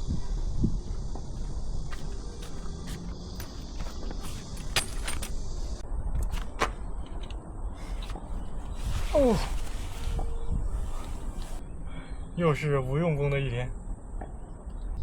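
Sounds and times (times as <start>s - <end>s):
steady low rumble: 0.0s - 12.1s.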